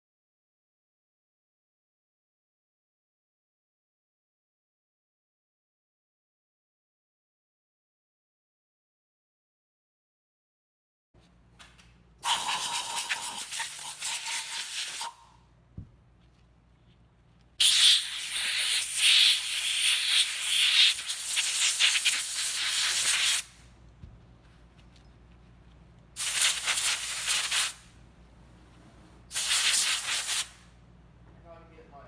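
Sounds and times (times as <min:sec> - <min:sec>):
hissing pressurised spray: 0:12.2 - 0:15.2, 0:17.6 - 0:23.5, 0:29.3 - 0:30.6.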